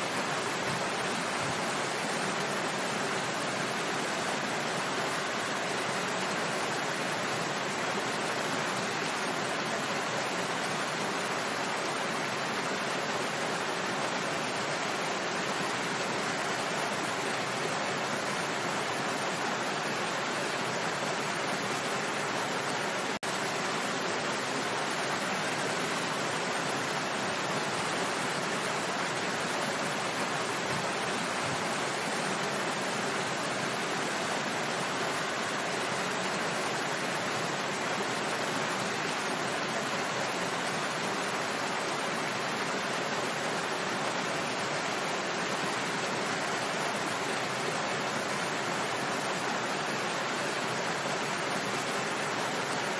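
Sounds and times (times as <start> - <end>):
small waterfall splashing: 0.0 - 52.9.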